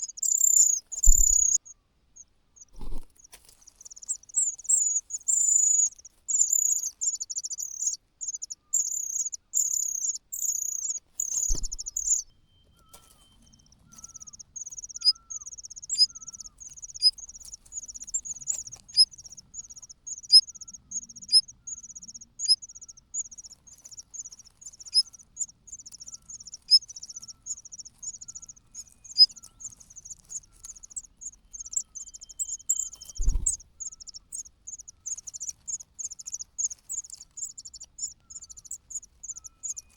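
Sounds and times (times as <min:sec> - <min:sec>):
bird chick begging calls: 0:00.0 - 0:01.6, 0:04.0 - 0:12.2, 0:13.8 - 0:39.9.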